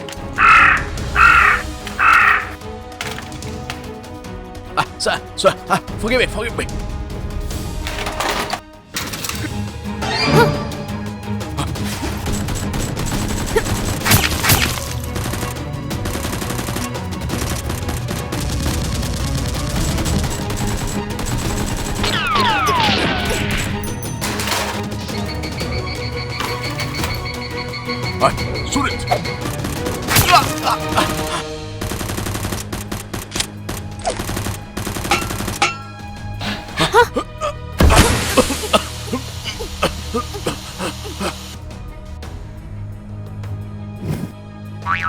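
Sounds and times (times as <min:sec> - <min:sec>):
action background music: 0:00.0 - 0:45.0
rapid gunfire: 0:11.8 - 0:23.5, 0:29.1 - 0:35.6.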